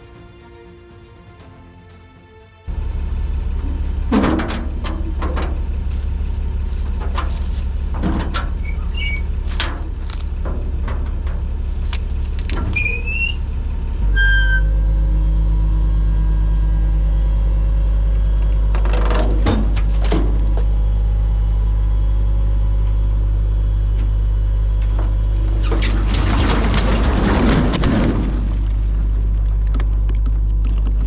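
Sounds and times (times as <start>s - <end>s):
rushing scrape: 2.7s - 10.5s, 25.3s - 29.7s
diesel engine running: 2.7s - 31.0s
short rising squeals: 14.1s - 14.8s.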